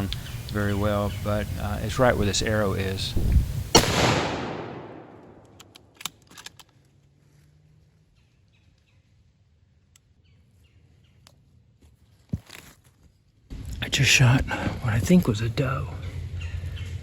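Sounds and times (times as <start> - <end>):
echoing gunshot: 3.7 - 5.6
faint clicks: 5.2 - 6.9.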